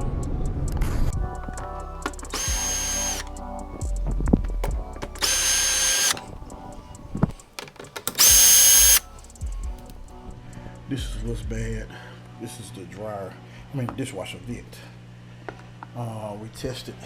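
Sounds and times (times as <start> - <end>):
power drill whining: 2.1 - 3.3, 5.2 - 6.2, 8.0 - 9.0
scattered clicks: 7.6 - 9.0.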